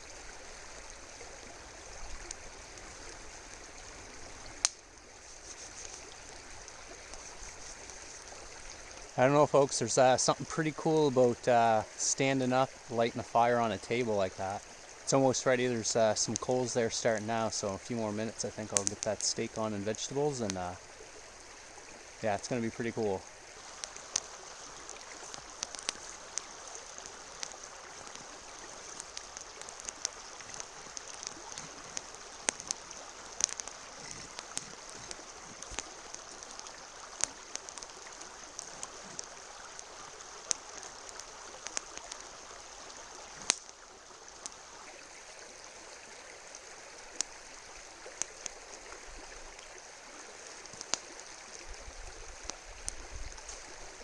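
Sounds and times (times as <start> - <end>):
campfire crackling and popping: 0.0 - 54.0.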